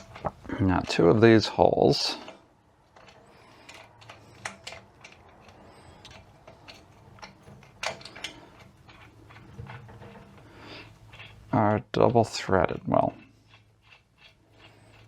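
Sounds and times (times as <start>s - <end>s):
hand ratchet clicking: 12.4s - 15.0s.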